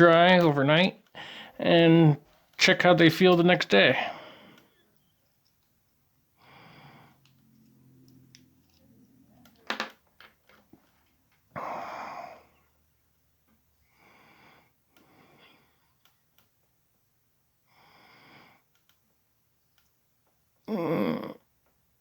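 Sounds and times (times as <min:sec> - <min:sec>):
man breathing: 0:01.1 - 0:01.6, 0:04.0 - 0:05.0, 0:06.3 - 0:07.7, 0:11.5 - 0:12.8, 0:13.8 - 0:16.0, 0:17.6 - 0:18.7
small ticks of handled parts: 0:04.5 - 0:06.0, 0:07.2 - 0:11.4.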